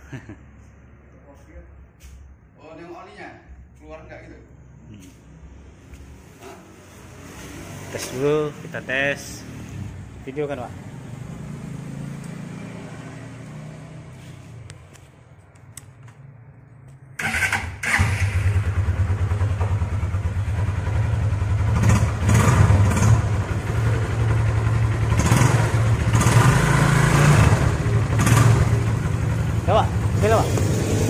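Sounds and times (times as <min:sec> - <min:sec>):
motorcycle engine revving: 0:06.7 - 0:14.6, 0:17.2 - 0:31.0
motorcycle engine starting: 0:17.2 - 0:31.0.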